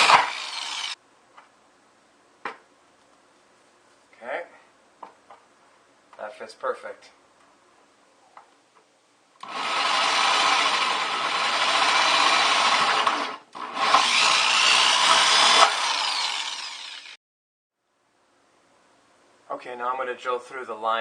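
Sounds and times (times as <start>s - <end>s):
power drill cutting plastic: 0.0s - 1.0s, 9.4s - 17.2s.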